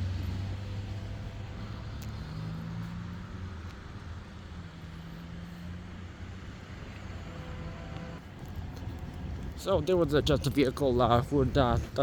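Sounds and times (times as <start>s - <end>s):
vehicle engine running: 0.0s - 9.6s
light traffic noise: 0.0s - 12.0s.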